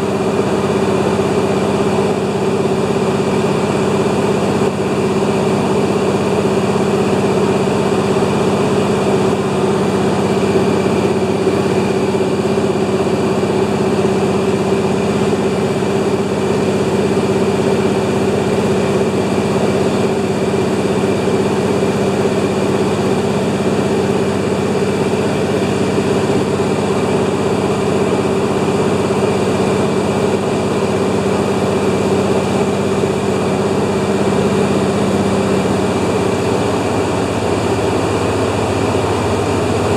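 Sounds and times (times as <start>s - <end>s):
airplane engine and propeller drone: 0.0s - 39.9s.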